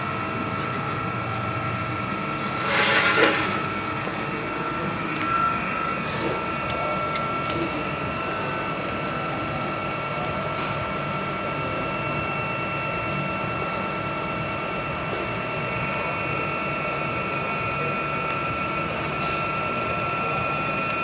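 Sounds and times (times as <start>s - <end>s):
high whine: 0.0s - 21.0s
press brake running: 2.5s - 4.2s.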